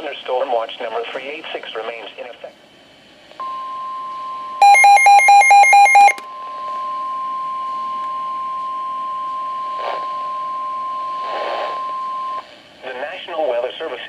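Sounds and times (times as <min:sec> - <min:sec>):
radio alert beeps: 0:04.6 - 0:06.2
steady alarm tone: 0:04.6 - 0:06.2.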